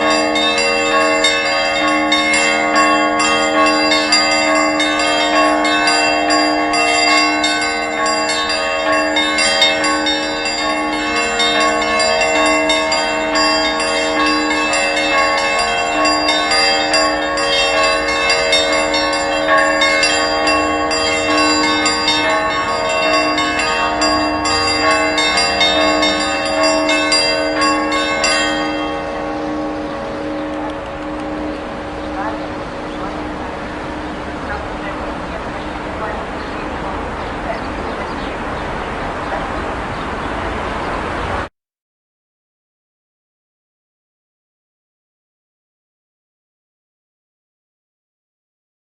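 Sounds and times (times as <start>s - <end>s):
church bells ringing: 0.0s - 41.5s.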